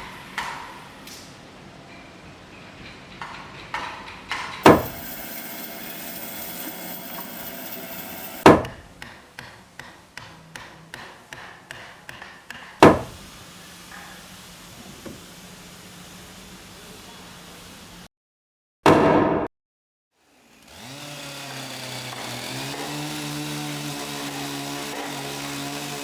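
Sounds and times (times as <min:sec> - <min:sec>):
hammer blows on timber: 0:04.6 - 0:14.2.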